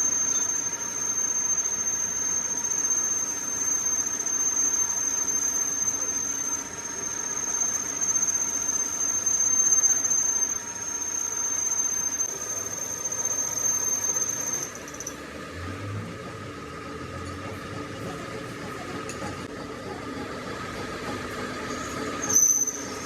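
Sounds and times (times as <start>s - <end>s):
faint high whine: 0.0s - 15.2s, 21.7s - 23.0s
high-pitched squeal: 0.0s - 15.2s, 21.6s - 23.0s
machine tool running: 0.0s - 15.2s.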